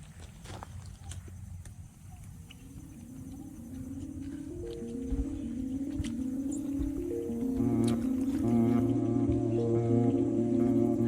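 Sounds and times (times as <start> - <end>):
slow held chords: 2.6 - 11.0
deep bass note: 6.8 - 11.0.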